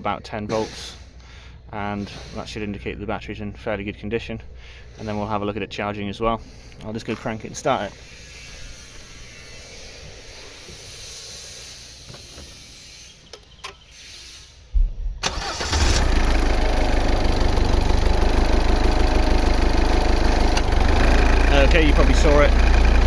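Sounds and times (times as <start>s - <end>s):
diesel engine idling: 15.2s - 23.0s
starter cranking engine: 15.2s - 23.0s.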